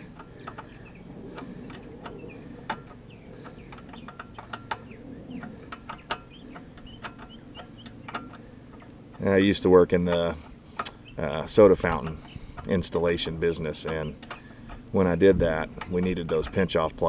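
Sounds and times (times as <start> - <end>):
light clicks of tools: 0.0 - 17.0.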